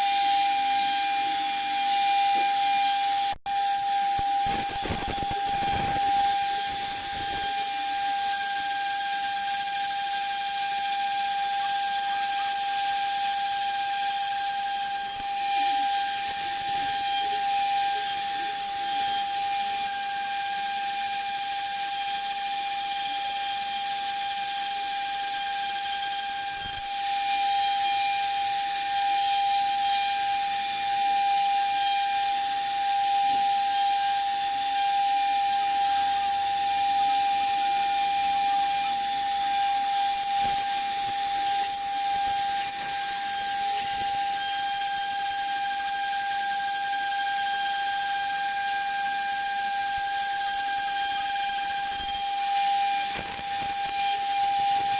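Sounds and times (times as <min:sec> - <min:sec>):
router spindle whining: 0:00.0 - 0:54.9.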